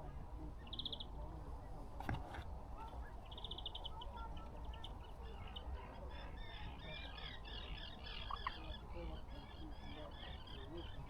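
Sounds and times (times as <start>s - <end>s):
small birds chirping: 0.6s - 1.2s, 2.9s - 11.0s.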